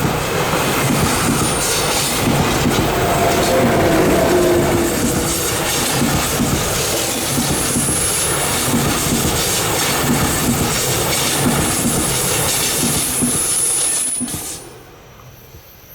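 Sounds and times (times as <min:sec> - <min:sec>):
train rumbling past: 0:00.0 - 0:15.9
high wheel squeal: 0:01.1 - 0:08.7.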